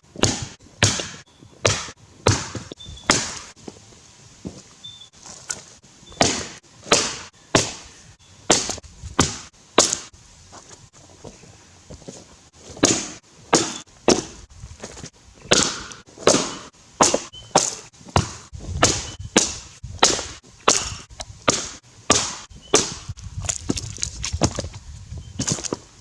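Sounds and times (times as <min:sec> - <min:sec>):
axe chopping log: 0:00.1 - 0:03.5, 0:05.3 - 0:07.9, 0:08.5 - 0:10.1, 0:12.7 - 0:24.6.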